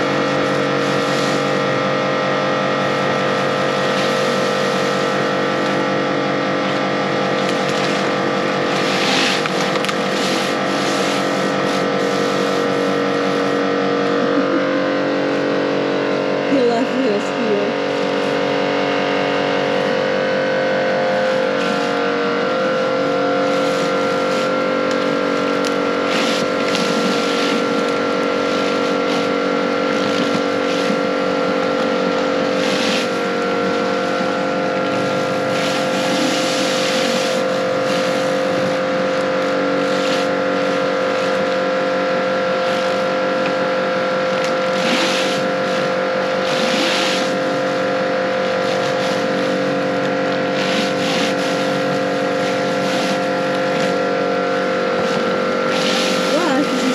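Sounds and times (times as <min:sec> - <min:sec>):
pressure washer running: 0:00.0 - 0:56.9
hissing water spray: 0:08.6 - 0:13.7, 0:23.0 - 0:31.4, 0:35.0 - 0:41.7, 0:44.7 - 0:54.0, 0:54.6 - 0:56.9.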